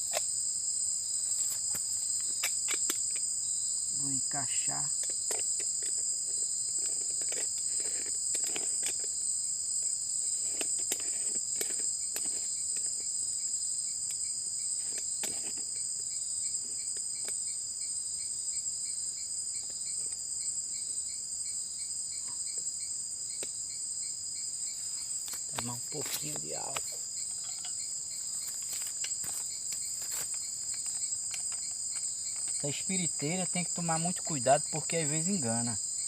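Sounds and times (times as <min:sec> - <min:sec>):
high-pitched insect chorus: 0:00.0 - 0:36.0
metal coffee pot clicks and knocks: 0:26.7 - 0:27.8.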